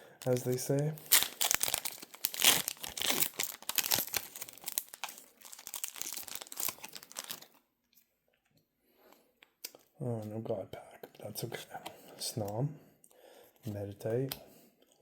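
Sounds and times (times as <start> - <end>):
foil wrapper crinkling and tearing: 0.0 - 7.6.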